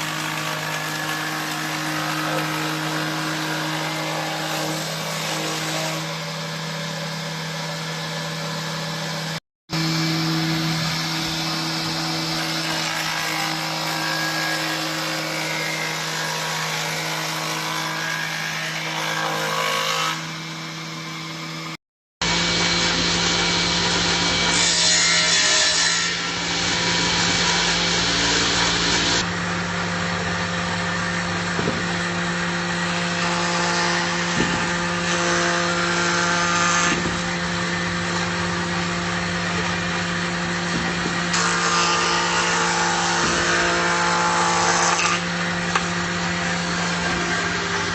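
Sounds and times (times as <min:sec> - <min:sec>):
planer machine cutting wood: 0:00.0 - 0:47.9.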